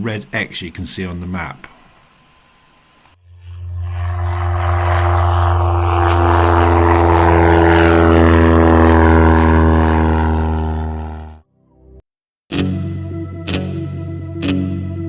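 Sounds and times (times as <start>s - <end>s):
propeller aircraft engines droning: 3.4s - 11.4s.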